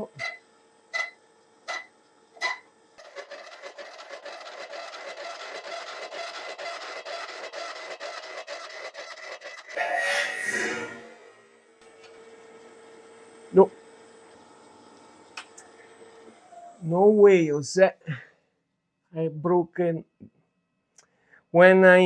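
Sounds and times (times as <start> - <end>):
milling cutter rasping scrape: 1.7 - 11.4.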